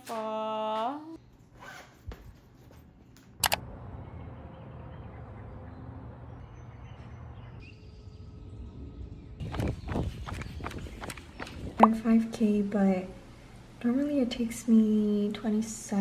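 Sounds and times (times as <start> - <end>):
scuffing sounds: 9.4 - 12.0.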